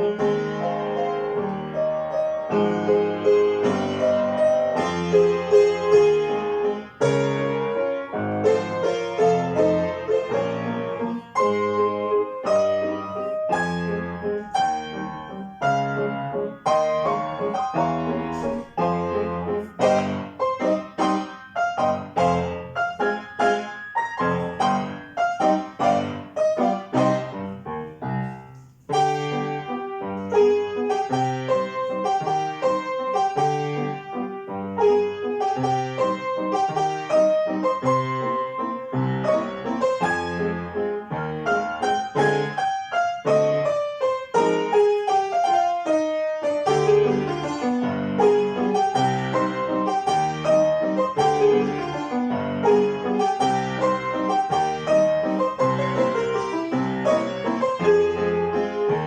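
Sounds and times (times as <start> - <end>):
piano duet playing a waltz: 0.0 - 59.0.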